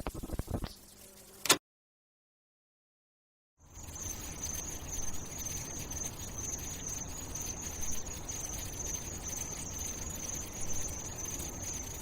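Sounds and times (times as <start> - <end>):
high-pitched insect-like chirring: 3.6 - 12.0.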